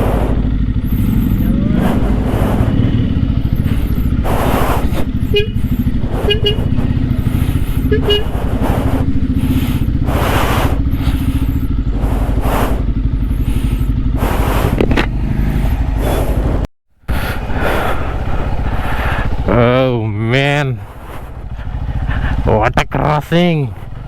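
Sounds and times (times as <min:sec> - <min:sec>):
wind noise: 0:00.0 - 0:19.5
motorcycle engine running: 0:00.0 - 0:24.0
horn toot: 0:01.0 - 0:11.6.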